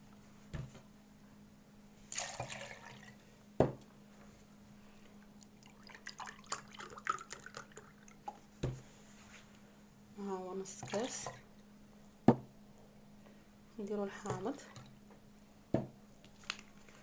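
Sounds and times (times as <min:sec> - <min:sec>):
liquid pouring into a glass: 0:02.1 - 0:03.2, 0:05.5 - 0:08.4
dripping: 0:05.4 - 0:08.4.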